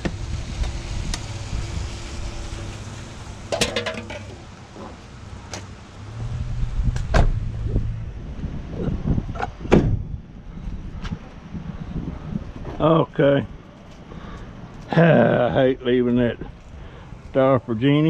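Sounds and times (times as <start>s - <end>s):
low engine hum: 0.0s - 15.1s
objects clanking and rattling: 3.5s - 5.0s.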